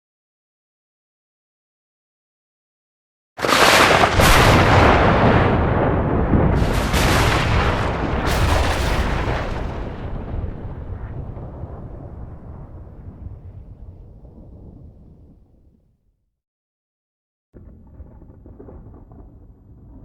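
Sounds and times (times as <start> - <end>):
thunder cracks: 3.4 - 15.8, 17.6 - 20.0
deep thunder rumble: 3.4 - 15.9, 17.6 - 20.0.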